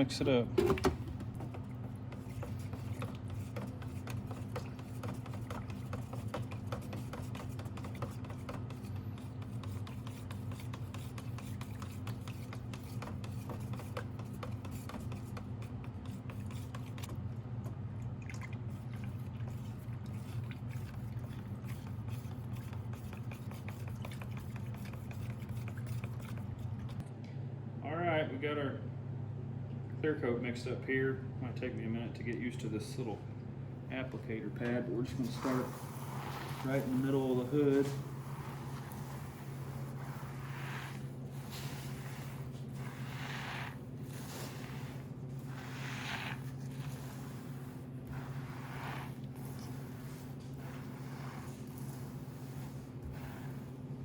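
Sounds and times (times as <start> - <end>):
steady low hum: 0.0 - 54.0
stirring scraping clicks in a cup: 1.2 - 17.2, 18.7 - 27.0.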